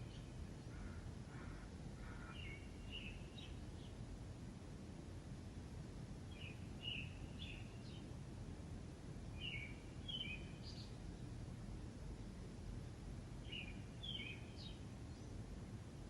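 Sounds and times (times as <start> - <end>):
faint low background hum: 0.0 - 16.0
bird chirping: 2.1 - 4.0, 6.3 - 8.0, 9.4 - 11.0, 13.4 - 15.4.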